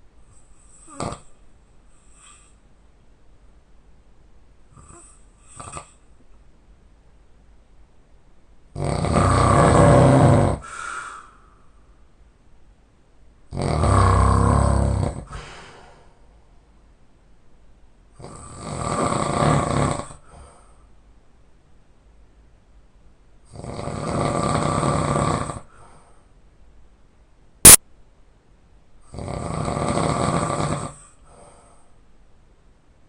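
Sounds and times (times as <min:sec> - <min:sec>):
man snoring loudly: 0:08.8 - 0:10.6, 0:13.5 - 0:15.3, 0:18.2 - 0:20.1, 0:23.5 - 0:25.7, 0:29.1 - 0:31.0.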